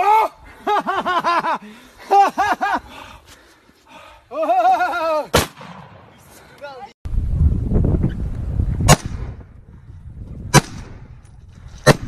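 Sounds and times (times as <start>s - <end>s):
shotgun shot: 5.3s - 6.2s, 8.8s - 9.4s, 10.5s - 11.1s.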